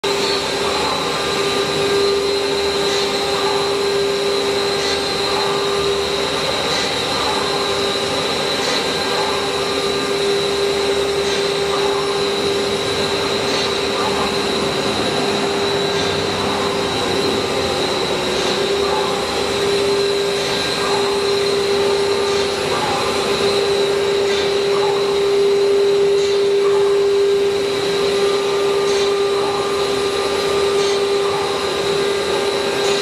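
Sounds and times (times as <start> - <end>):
router spindle high whine: 0.0 - 33.0
mechanical hiss: 0.1 - 33.0.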